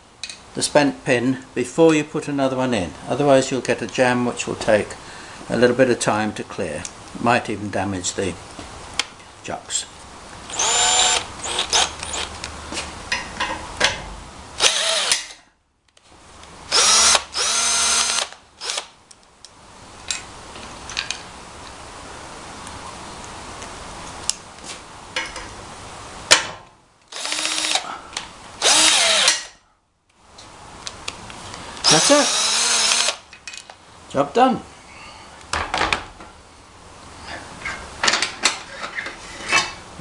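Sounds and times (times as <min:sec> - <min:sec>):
cordless drill motor whine: 0:10.5 - 0:12.3, 0:14.6 - 0:15.2, 0:16.7 - 0:18.8, 0:27.1 - 0:27.8, 0:28.6 - 0:29.4, 0:31.8 - 0:33.2.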